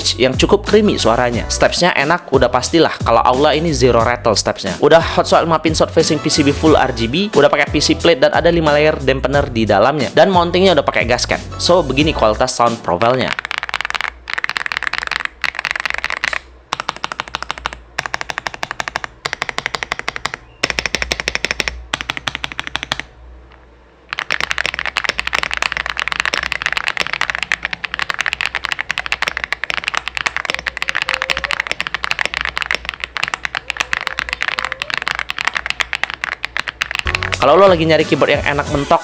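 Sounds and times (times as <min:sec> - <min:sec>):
fast typing on mechanical keyboard: 0:13.2 - 0:23.1, 0:24.1 - 0:37.4.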